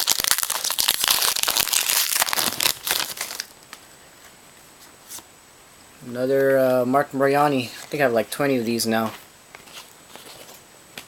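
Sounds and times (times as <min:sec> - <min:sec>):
pack wrapper crinkling: 0:00.0 - 0:03.6.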